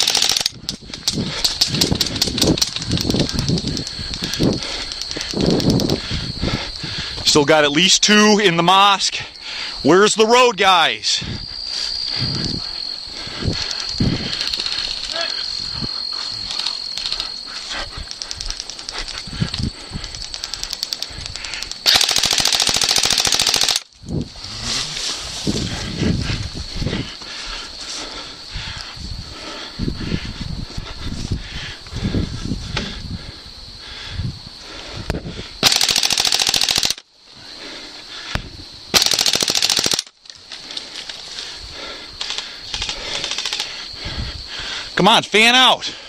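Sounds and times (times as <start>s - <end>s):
airsoft guns firing full auto: 0.0s - 0.6s, 21.8s - 23.9s, 35.6s - 37.0s, 38.9s - 40.1s.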